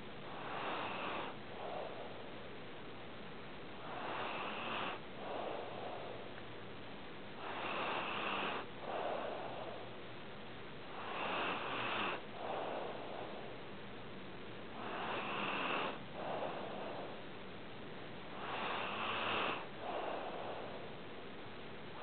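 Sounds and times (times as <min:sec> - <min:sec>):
pet snoring: 0:00.2 - 0:02.3, 0:03.8 - 0:06.3, 0:07.4 - 0:09.9, 0:10.8 - 0:13.6, 0:14.7 - 0:17.2, 0:18.3 - 0:21.0.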